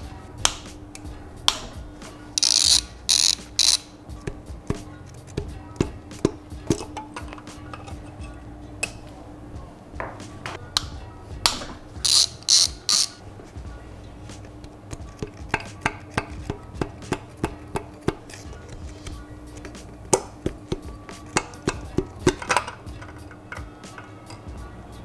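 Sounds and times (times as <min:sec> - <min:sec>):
socket ratchet clicking: 0:00.4 - 0:08.2, 0:10.7 - 0:13.3, 0:14.3 - 0:24.1
metal tools clinking: 0:02.4 - 0:09.1, 0:11.5 - 0:13.6, 0:17.2 - 0:24.5.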